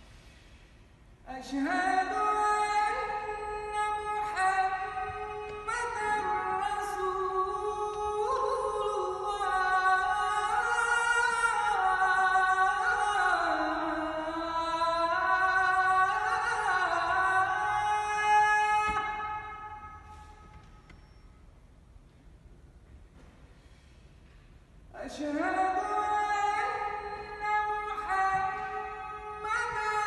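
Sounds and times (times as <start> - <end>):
person singing unaccompanied: 1.3 - 19.7, 25.0 - 30.0.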